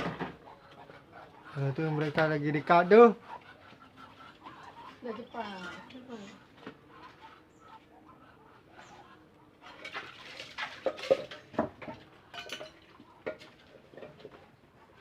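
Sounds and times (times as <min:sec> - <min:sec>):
clattering against a bird cage: 0:09.7 - 0:14.4.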